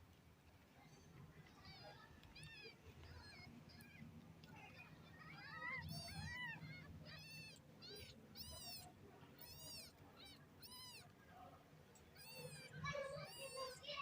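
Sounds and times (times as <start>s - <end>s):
cat meowing: 0.8s - 4.0s, 5.2s - 11.1s, 12.1s - 14.0s.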